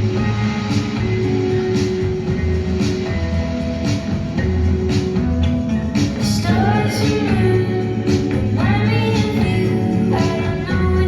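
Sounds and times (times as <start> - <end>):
folk song over loudspeakers: 6.0 - 11.0.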